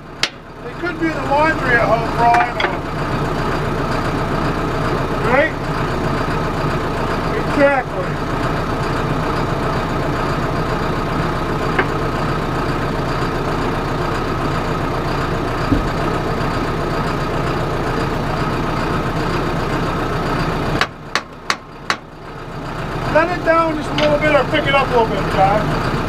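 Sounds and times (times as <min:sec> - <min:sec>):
tractor diesel engine idling: 0:00.0 - 0:26.0
light knocks: 0:15.7 - 0:16.0.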